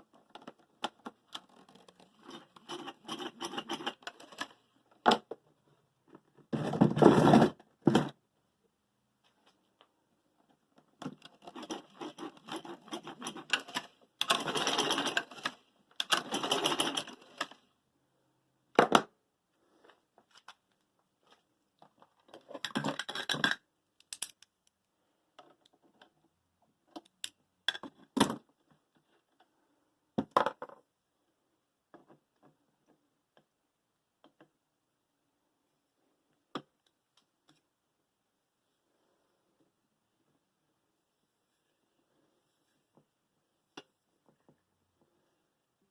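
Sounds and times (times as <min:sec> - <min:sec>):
objects clattering and scraping: 0:00.2 - 0:05.4, 0:06.1 - 0:08.2, 0:11.0 - 0:17.7, 0:21.3 - 0:23.7.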